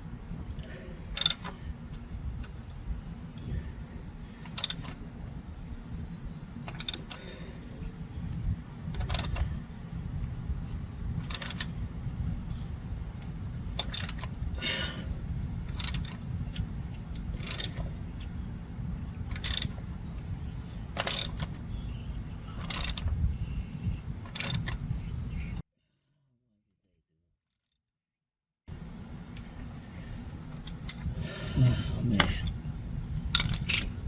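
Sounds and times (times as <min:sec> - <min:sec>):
steady low rumble: 0:00.0 - 0:25.6, 0:28.7 - 0:34.0
ratchet clicks: 0:01.1 - 0:01.6, 0:04.4 - 0:05.0, 0:06.6 - 0:07.2, 0:08.9 - 0:09.6, 0:11.2 - 0:11.8, 0:13.8 - 0:14.4, 0:15.7 - 0:17.8, 0:19.3 - 0:19.8, 0:21.0 - 0:21.6, 0:22.6 - 0:23.1, 0:24.2 - 0:24.8, 0:33.3 - 0:34.0.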